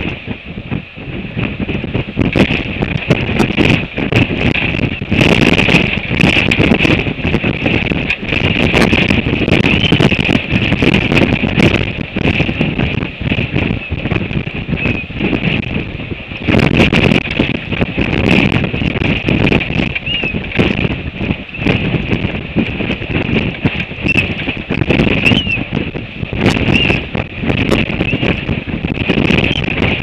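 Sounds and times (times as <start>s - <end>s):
gusty wind buffeting microphone: 0.0s - 30.0s
high-pitched whistle: 9.7s - 10.1s, 25.2s - 25.6s, 26.7s - 27.0s.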